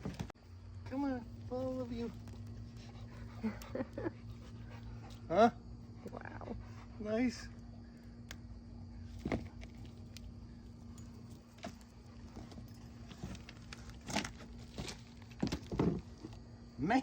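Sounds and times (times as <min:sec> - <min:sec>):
rustling of soil and tubers: 0:00.0 - 0:05.4, 0:09.0 - 0:17.0
steady low hum: 0:00.0 - 0:17.0.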